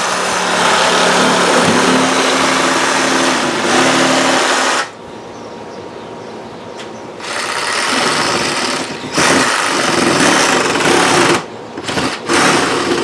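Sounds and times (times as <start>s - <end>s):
small motor running: 7.2s - 13.0s.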